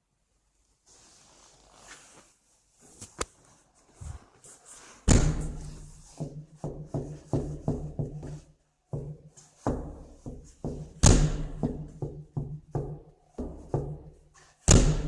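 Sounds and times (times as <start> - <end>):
banging on a door: 5.1 - 8.4, 9.0 - 14.1, 14.7 - 15.0.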